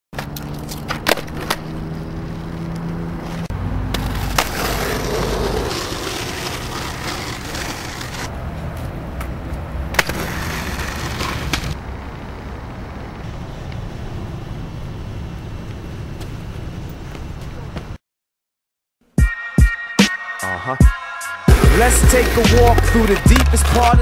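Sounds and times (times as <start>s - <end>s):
skateboard popping and landing: 0.2s - 1.9s, 2.7s - 8.3s, 9.9s - 11.8s, 21.6s - 24.0s
skateboard wheels rolling on pavement: 0.2s - 18.0s, 21.5s - 24.0s.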